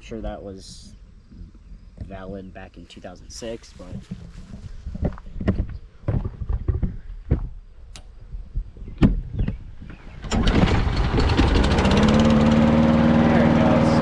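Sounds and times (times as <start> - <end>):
lawn mower engine starting: 10.0 - 14.0.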